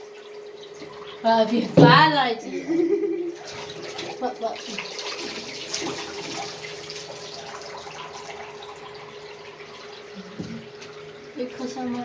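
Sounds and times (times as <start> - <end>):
tap water splashing into bathtub: 0.8 - 2.4, 3.4 - 11.2.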